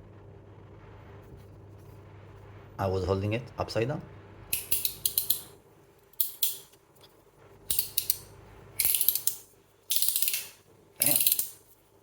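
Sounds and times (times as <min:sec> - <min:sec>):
metal fidget slider clicking: 0:04.6 - 0:05.5, 0:07.7 - 0:08.2, 0:08.8 - 0:11.6.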